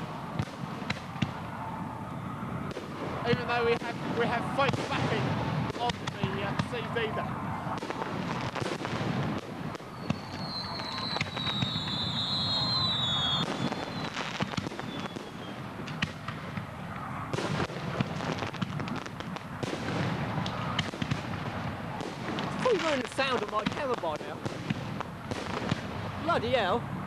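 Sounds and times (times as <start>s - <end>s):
fireworks cracks and bangs: 0.0s - 2.0s, 2.6s - 26.7s
high firework whistle: 9.8s - 15.6s.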